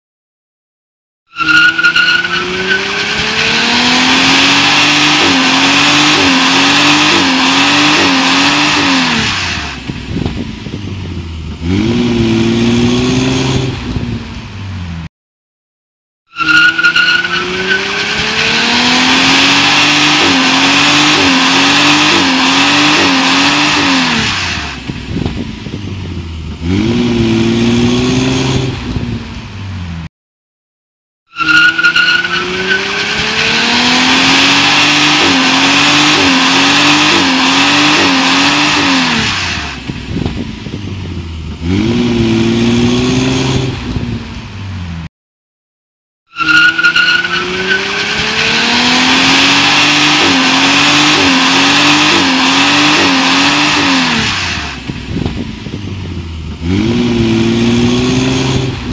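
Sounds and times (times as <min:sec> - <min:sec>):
tire squeal: 0:01.3 - 0:09.9, 0:16.3 - 0:24.9, 0:31.3 - 0:39.9, 0:46.3 - 0:55.0
car engine accelerating: 0:01.6 - 0:15.1, 0:16.8 - 0:30.1, 0:31.8 - 0:45.1, 0:46.6 - 0:58.9.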